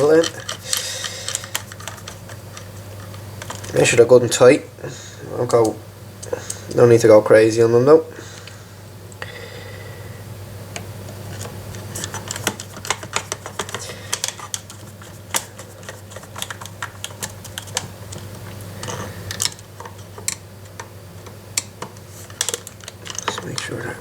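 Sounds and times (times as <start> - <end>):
steady low hum: 0.0 - 24.0
screwdriver and gun parts clicking: 21.6 - 23.6.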